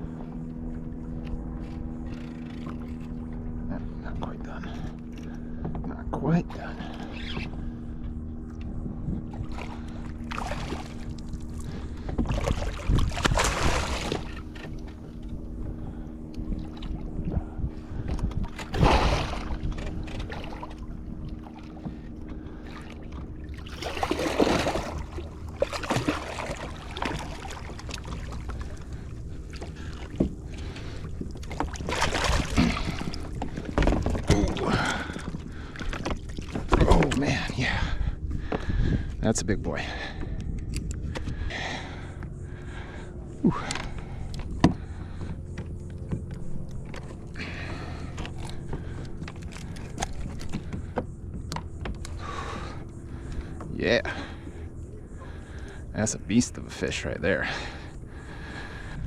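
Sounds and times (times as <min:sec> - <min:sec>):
steady low hum: 0:00.0 - 0:59.0
fish splashing in water: 0:09.6 - 0:14.6, 0:18.6 - 0:20.8, 0:22.6 - 0:37.0.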